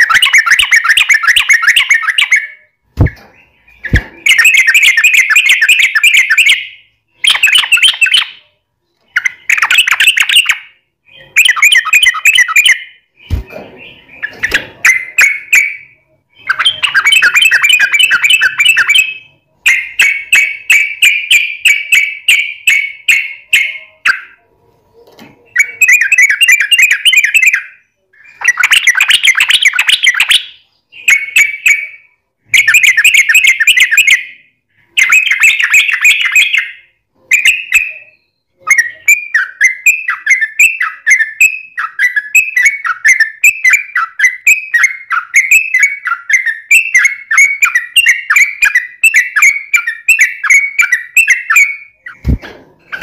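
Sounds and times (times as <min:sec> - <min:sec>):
bird singing chattering notes: 0:00.0 - 0:24.4.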